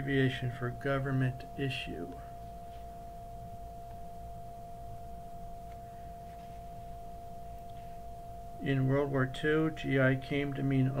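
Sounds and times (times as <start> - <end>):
faint steady whine: 0.0 - 11.0
low background hum: 0.0 - 11.0.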